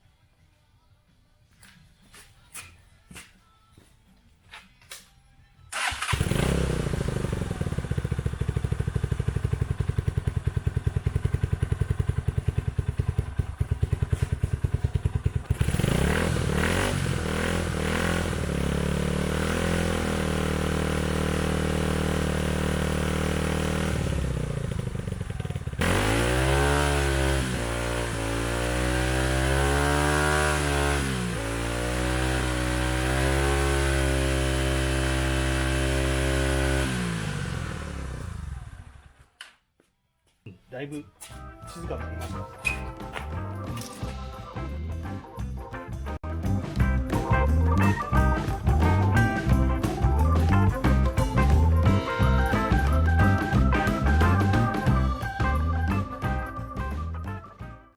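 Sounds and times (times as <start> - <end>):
motorcycle engine revving: 5.7 - 39.4, 47.1 - 57.1.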